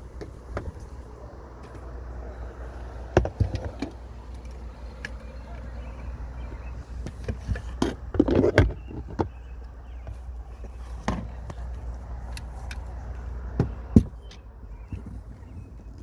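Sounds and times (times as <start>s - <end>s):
knocks and clunks of gear: 7.0s - 12.8s, 13.5s - 16.0s.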